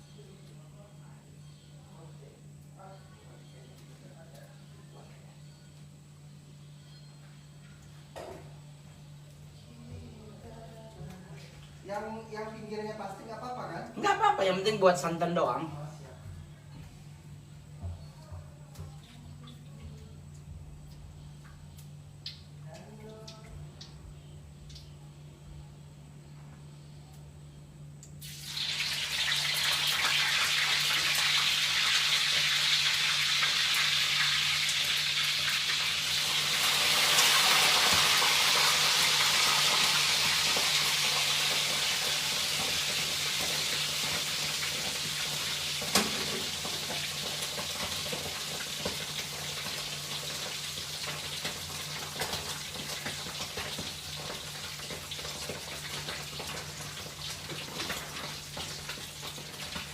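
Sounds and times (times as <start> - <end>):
food sizzling in hot oil: 28.2 - 59.9.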